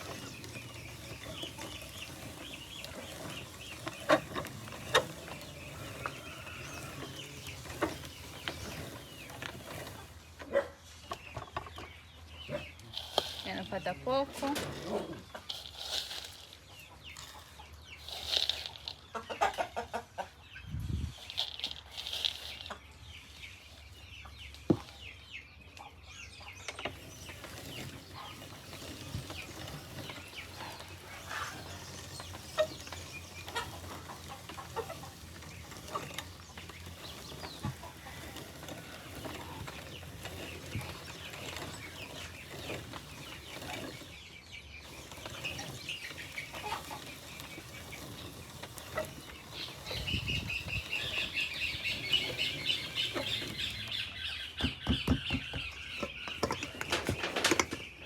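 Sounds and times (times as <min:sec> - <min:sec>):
chickens clucking: 0:00.0 - 0:58.0.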